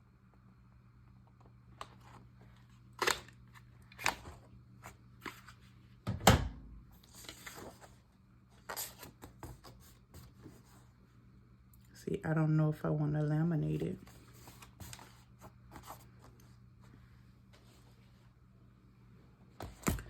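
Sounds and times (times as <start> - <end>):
paper rustling: 7.0 - 10.9, 14.0 - 16.4.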